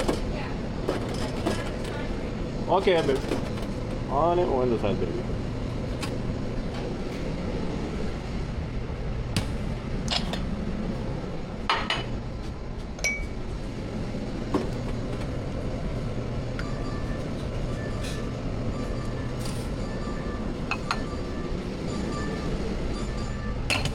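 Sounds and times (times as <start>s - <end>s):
utensils and dishes clinking: 20.7s - 21.2s, 23.0s - 23.9s.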